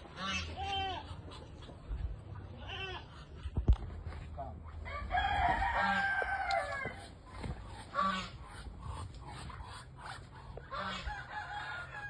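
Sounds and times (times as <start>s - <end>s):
rooster crowing: 4.8s - 7.0s, 11.0s - 12.0s.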